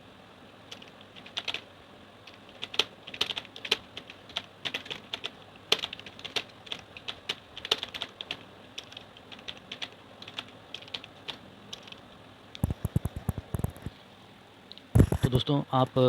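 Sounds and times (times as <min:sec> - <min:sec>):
keyboard keys clicking: 0:02.3 - 0:12.0, 0:12.6 - 0:13.9, 0:15.0 - 0:15.4.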